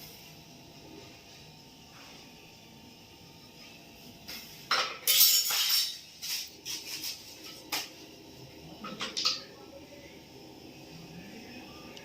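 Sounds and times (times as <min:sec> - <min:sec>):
hard objects clattering and clinking: 0:04.7 - 0:07.9.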